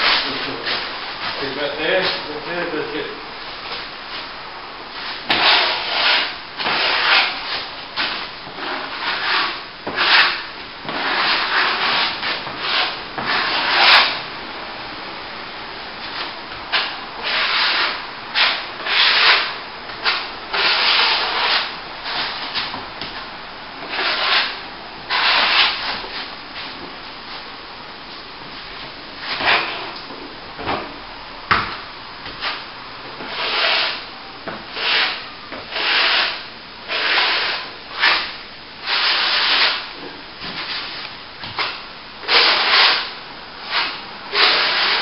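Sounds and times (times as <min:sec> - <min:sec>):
trowel scraping wet plaster: 0:05.2 - 0:14.2, 0:16.7 - 0:22.7, 0:23.8 - 0:26.1, 0:33.2 - 0:34.0, 0:34.7 - 0:38.2, 0:38.8 - 0:39.9, 0:41.6 - 0:43.1, 0:43.7 - 0:45.0.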